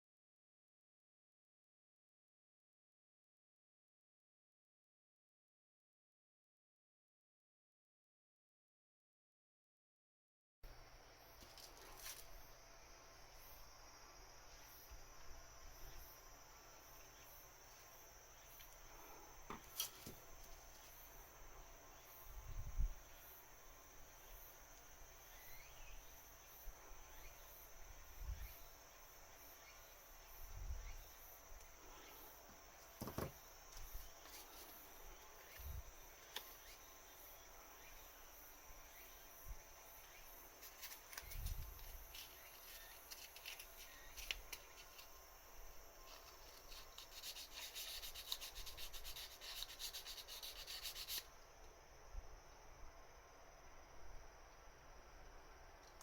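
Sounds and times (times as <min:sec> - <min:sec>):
high-pitched insect chirring: 0:33.4 - 0:51.3
rubbing strokes: 0:46.0 - 0:51.3.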